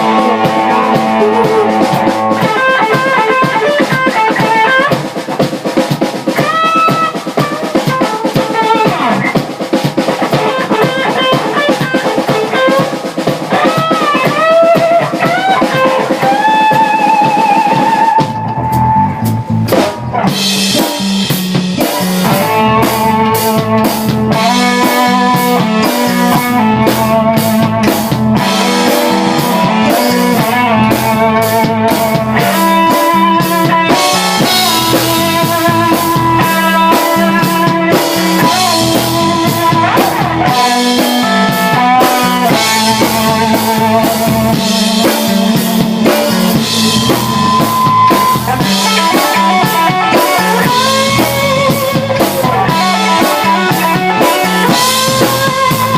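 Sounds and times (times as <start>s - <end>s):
drum kit steady beat: 0.0s - 55.9s
electric guitar: 0.0s - 55.9s.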